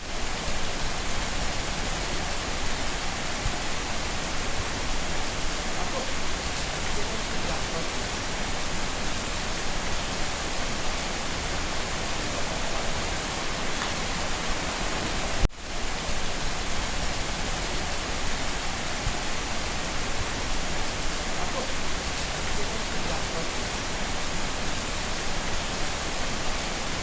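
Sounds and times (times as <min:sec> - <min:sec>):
heavy rain hissing: 0:00.0 - 0:27.0.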